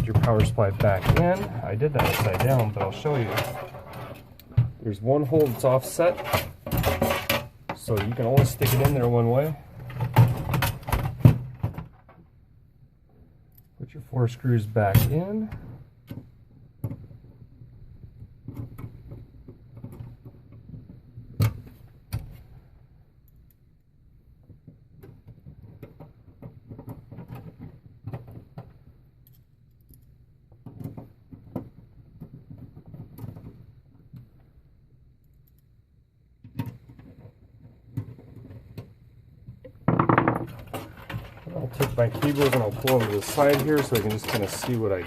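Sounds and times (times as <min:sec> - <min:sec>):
rattling clatter: 0:00.0 - 0:12.2, 0:39.8 - 0:45.0
screwdriver and screws on metal case: 0:00.0 - 0:12.2, 0:39.6 - 0:45.0
sharp clicks and knocks: 0:00.0 - 0:12.4, 0:36.4 - 0:45.0.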